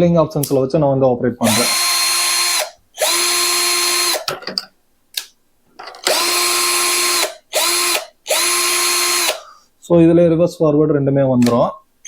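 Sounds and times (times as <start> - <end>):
cordless drill motor whining: 1.4 - 4.2, 6.1 - 9.4.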